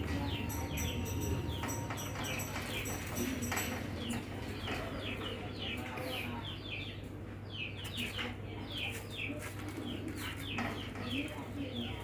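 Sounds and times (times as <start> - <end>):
steady low hum: 0.0 - 5.3
small birds chirping: 0.0 - 12.0.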